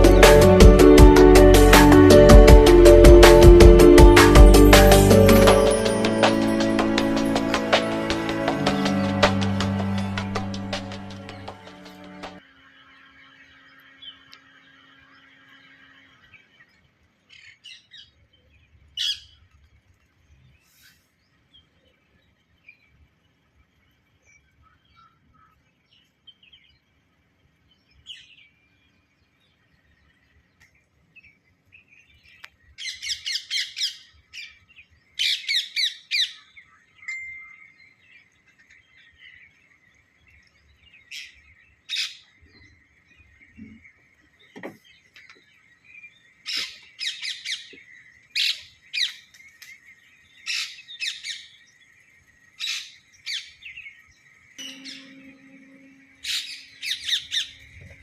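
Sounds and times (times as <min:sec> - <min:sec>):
parrot chirping: 0:54.6 - 0:57.8.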